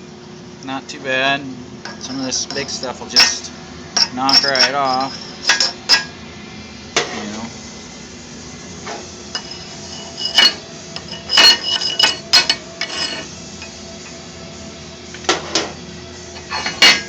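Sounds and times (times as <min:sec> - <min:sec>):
steel parts knocking and clinking: 0:01.9 - 0:06.1, 0:09.4 - 0:13.3, 0:16.4 - 0:17.0.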